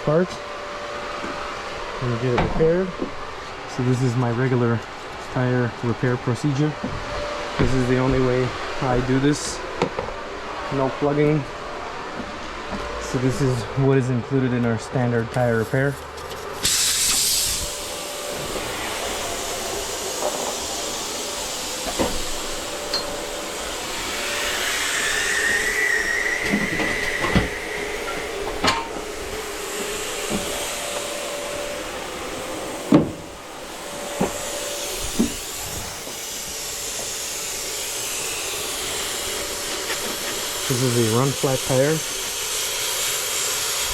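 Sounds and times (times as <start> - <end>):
hiss of escaping air: 15.3 - 43.9.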